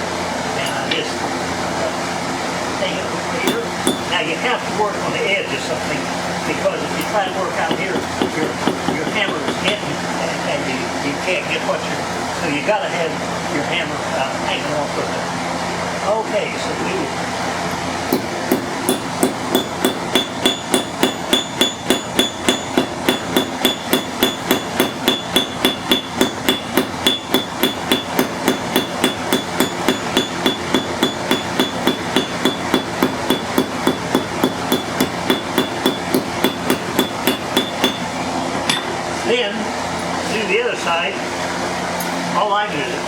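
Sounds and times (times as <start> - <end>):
hammer ringing on steel: 3.5 - 4.2, 7.0 - 9.8, 18.2 - 38.9.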